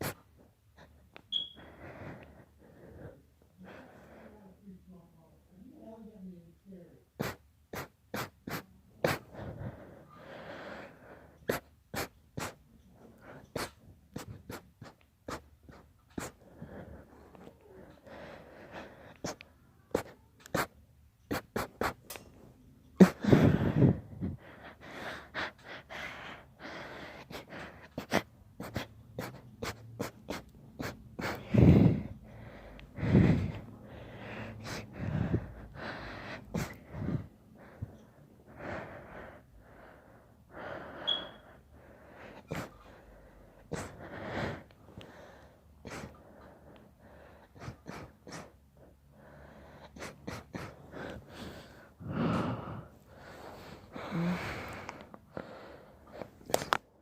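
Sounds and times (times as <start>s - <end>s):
sharp breaths and gasps: 0.0s - 4.4s, 7.2s - 57.0s
quiet sneezes: 7.2s - 9.4s, 11.5s - 16.4s, 19.2s - 22.2s, 27.4s - 31.4s, 49.9s - 50.8s.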